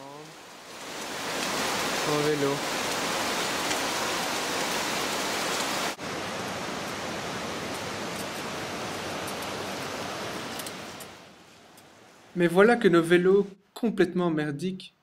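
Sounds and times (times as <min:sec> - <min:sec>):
water rushing: 0:00.0 - 0:11.4.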